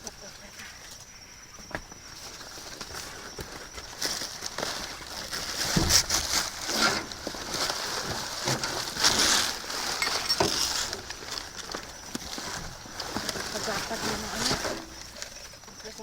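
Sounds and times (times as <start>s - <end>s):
items clinking and knocking: 1.6s - 16.0s
plastic rustling: 1.8s - 16.0s.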